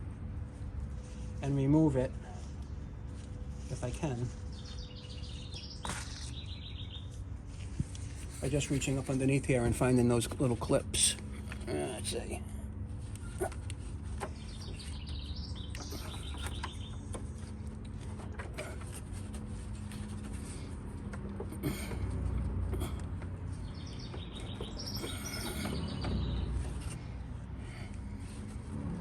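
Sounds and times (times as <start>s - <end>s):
steady low hum: 0.0s - 29.0s
small birds chirping: 2.4s - 10.2s, 13.1s - 20.7s, 21.6s - 27.9s.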